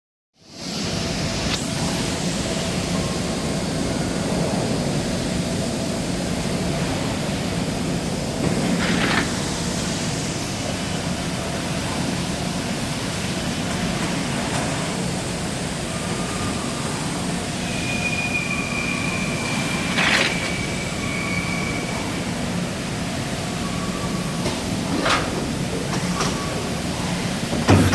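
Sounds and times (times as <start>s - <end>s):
thin high whine: 15.9s - 22.6s
punching machine hum: 24.4s - 27.9s.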